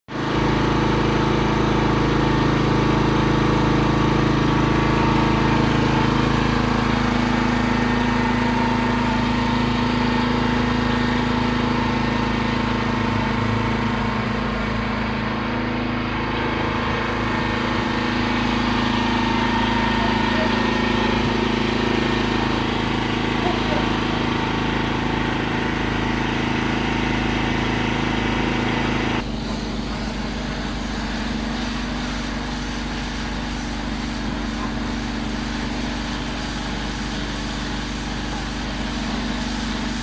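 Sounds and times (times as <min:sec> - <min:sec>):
pressure washer engine running: 0:00.1 - 0:40.0.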